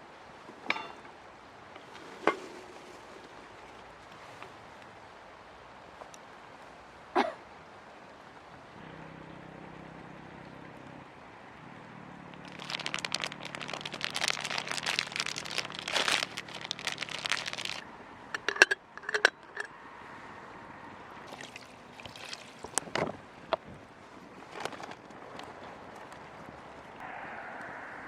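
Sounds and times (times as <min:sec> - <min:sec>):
packaging crinkling: 0:12.4 - 0:17.8.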